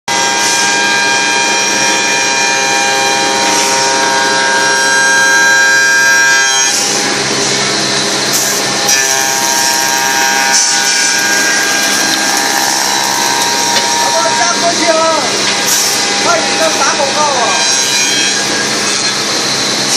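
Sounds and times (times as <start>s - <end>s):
milling machine cutters whining: 0.1s - 19.9s.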